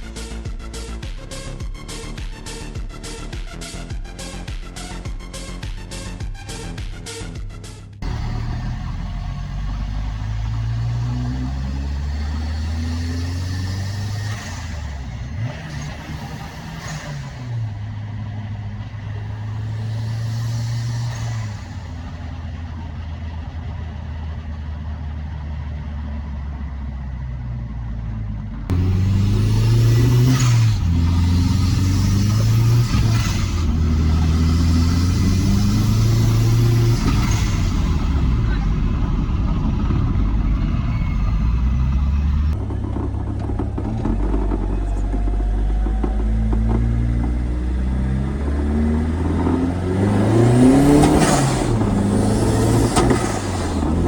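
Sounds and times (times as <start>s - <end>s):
background music: 0.0s - 22.6s
turbocharged car engine pulling: 0.0s - 54.0s.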